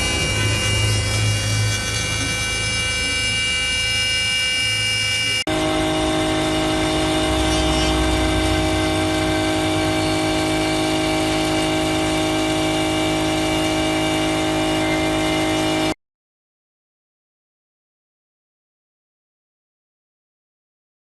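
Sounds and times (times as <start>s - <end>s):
wood router spindle whine: 0.0s - 16.0s.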